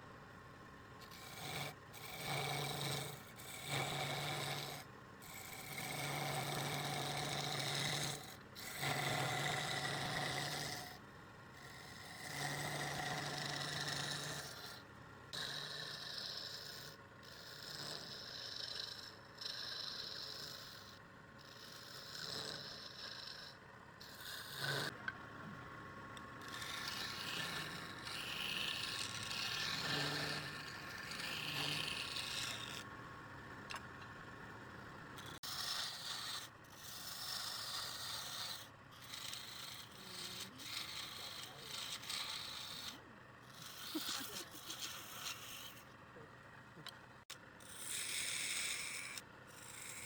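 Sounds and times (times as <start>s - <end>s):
turning tool scraping wood: 26.4s - 32.9s, 35.2s - 45.9s.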